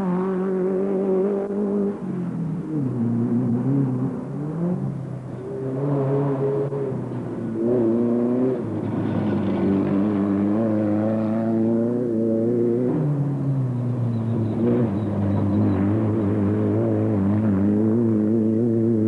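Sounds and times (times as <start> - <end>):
race car engine accelerating: 0.0 - 19.0.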